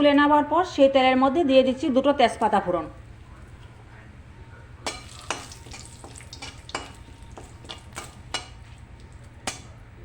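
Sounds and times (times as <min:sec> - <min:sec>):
metal spatula clinking in pan: 0:04.8 - 0:07.0
faint oil sizzle: 0:04.8 - 0:09.3.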